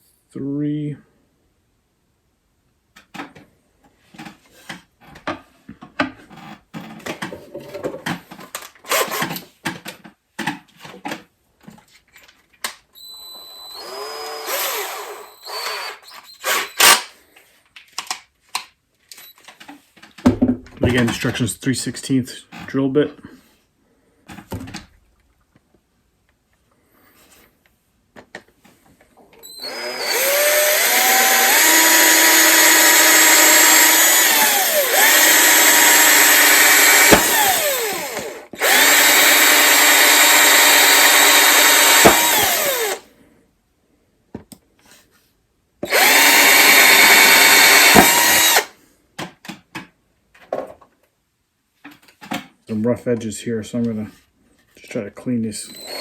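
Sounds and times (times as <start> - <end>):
power drill boring holes: 8.9 - 9.4, 13.0 - 17.1, 29.4 - 43.1, 45.8 - 48.8, 55.5 - 56.0.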